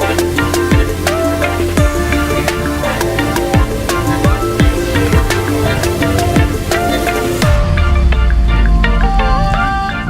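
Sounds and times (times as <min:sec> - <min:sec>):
dubstep dance music: 0:00.0 - 0:10.0.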